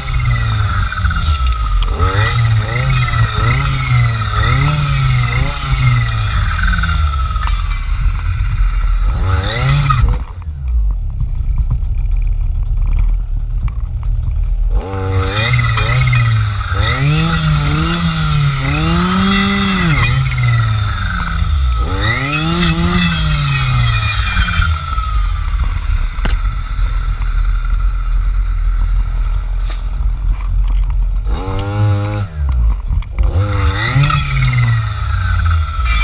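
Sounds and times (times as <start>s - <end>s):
clearing saw engine revving: 0.0s - 10.5s, 14.7s - 25.8s, 31.2s - 36.0s.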